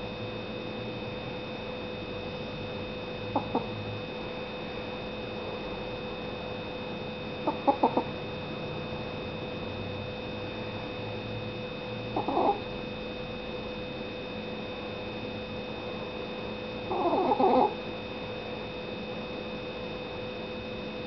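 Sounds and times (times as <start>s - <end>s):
dog snoring: 12.2s - 12.6s, 16.9s - 17.8s.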